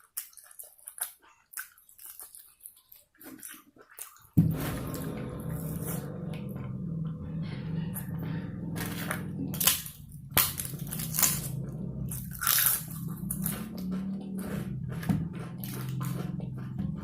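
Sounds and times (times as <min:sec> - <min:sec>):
wet chewing and mouth clicks: 0:00.0 - 0:04.4, 0:08.8 - 0:17.0
steady low hum: 0:04.4 - 0:17.0.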